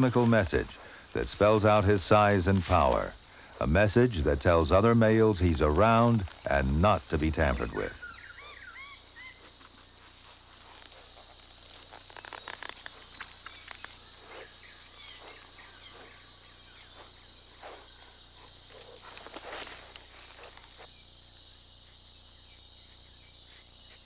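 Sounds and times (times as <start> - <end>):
high-pitched insect chorus: 0.0 - 24.0
rustles and clicks: 9.4 - 14.6, 18.5 - 20.9.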